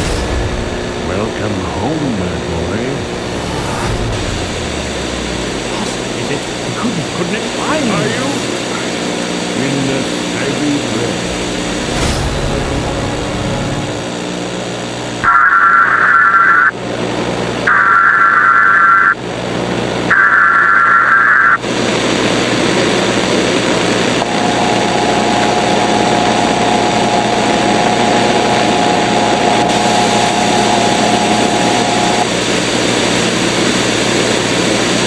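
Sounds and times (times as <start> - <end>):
static hiss: 0.0 - 14.3, 20.1 - 35.0
steady tone: 0.0 - 15.1, 24.0 - 33.4.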